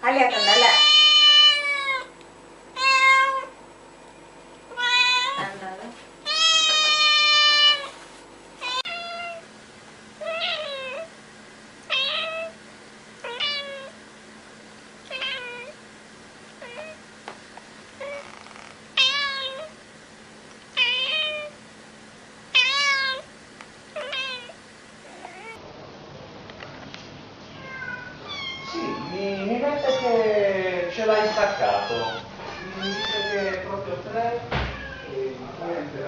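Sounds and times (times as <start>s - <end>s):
cat meowing: 0.2s - 2.1s, 2.8s - 3.6s, 4.7s - 5.4s, 6.2s - 8.0s, 8.6s - 9.4s, 10.2s - 11.1s, 11.9s - 12.6s, 13.2s - 14.0s, 15.1s - 15.8s, 16.6s - 17.0s, 18.0s - 19.8s, 20.8s - 21.6s, 22.5s - 23.3s, 24.0s - 25.6s, 27.5s - 30.3s, 31.0s - 33.6s, 34.6s - 35.2s.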